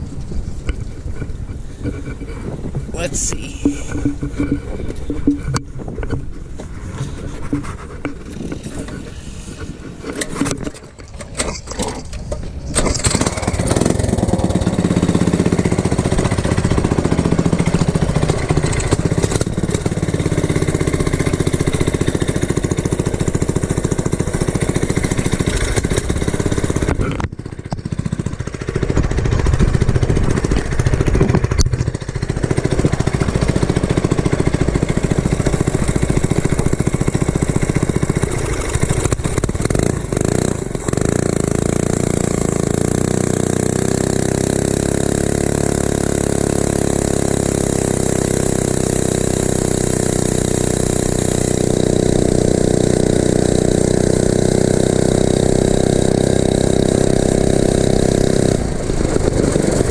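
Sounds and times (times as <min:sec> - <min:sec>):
wind noise on microphone: 0:00.0 - 0:21.2, 0:25.2 - 0:42.8, 0:57.4 - 0:59.9
small engine droning: 0:00.0 - 0:59.9.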